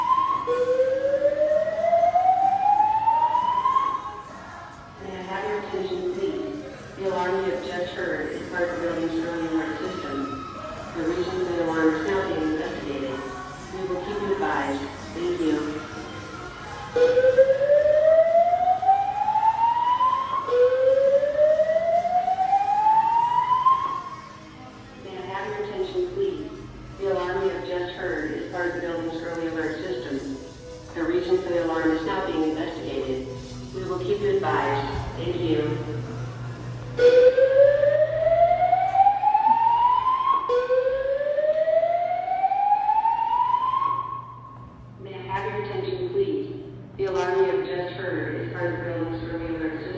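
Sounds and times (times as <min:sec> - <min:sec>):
fire alarm whoop tone: 0:00.0 - 0:04.2, 0:17.0 - 0:24.2, 0:37.0 - 0:44.6.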